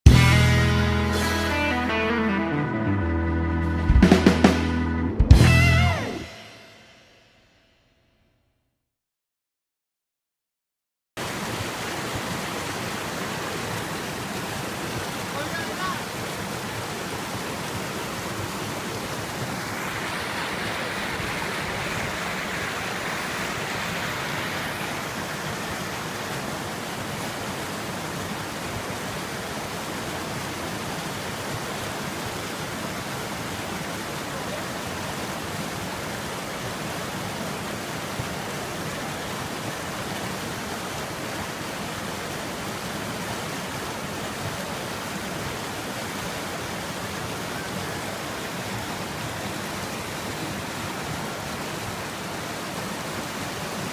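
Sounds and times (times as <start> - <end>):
fast river rushing: 11.2 - 53.9.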